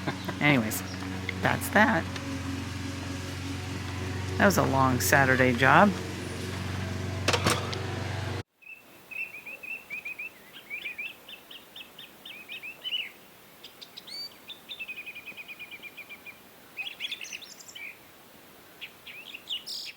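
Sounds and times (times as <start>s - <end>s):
songbirds chirping and singing: 0.0s - 18.0s
bird trill: 8.6s - 18.0s.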